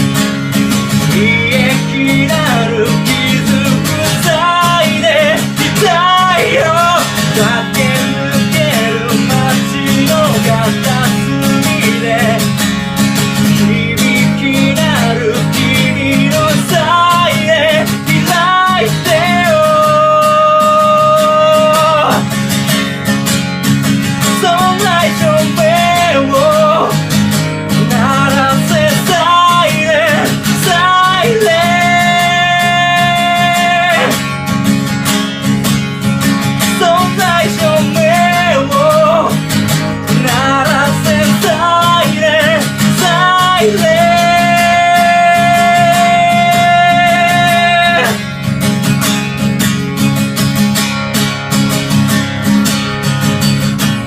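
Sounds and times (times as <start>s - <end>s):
acoustic guitar: 0.0s - 54.0s
person singing: 0.8s - 22.4s, 24.2s - 27.0s, 27.7s - 34.4s, 36.6s - 48.4s.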